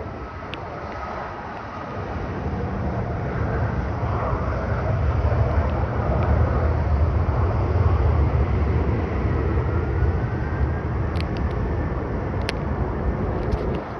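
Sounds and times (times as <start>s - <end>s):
jet engines rumbling: 0.0s - 13.9s
rising engine whine: 0.0s - 13.9s
light clicks: 12.4s - 12.6s.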